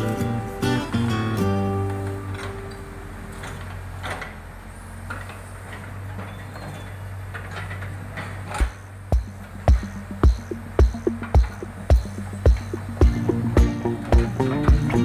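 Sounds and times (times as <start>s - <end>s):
diesel engine running: 0.0s - 15.0s
metal clanks and knocks: 1.9s - 4.5s, 5.1s - 15.0s
heavy thump: 8.6s - 15.0s.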